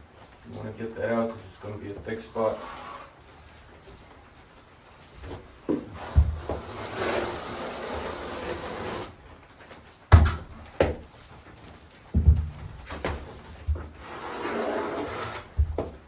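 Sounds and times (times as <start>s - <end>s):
trowel scraping mortar: 2.2s - 3.2s, 5.7s - 9.2s, 13.7s - 15.9s
dull knocks: 10.1s - 11.1s, 12.1s - 14.0s, 15.6s - 16.0s.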